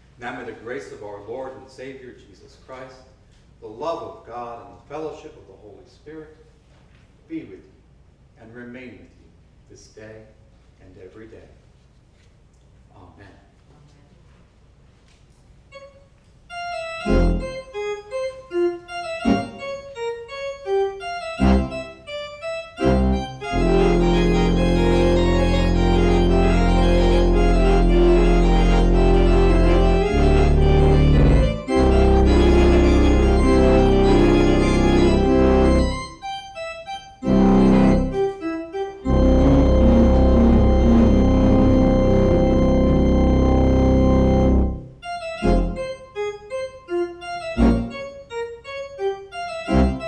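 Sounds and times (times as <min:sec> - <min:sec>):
church organ playing chords: 0:15.7 - 0:50.0.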